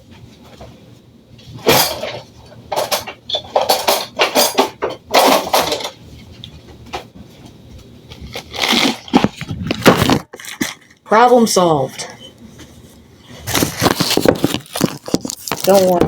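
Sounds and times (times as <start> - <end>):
utensils and dishes clattering: 1.6 - 6.1.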